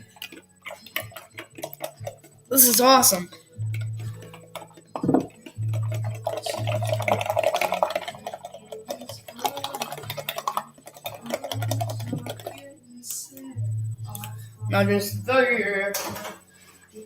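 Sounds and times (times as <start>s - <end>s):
straw stirring in a cup: 0.0s - 12.8s.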